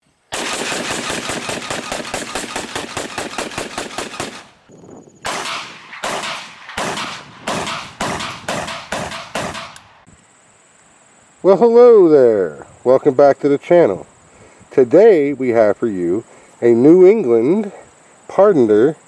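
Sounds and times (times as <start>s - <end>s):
automatic gunfire burst: 0.3s - 4.7s, 5.3s - 10.1s
single gunshots: 0.3s - 10.1s.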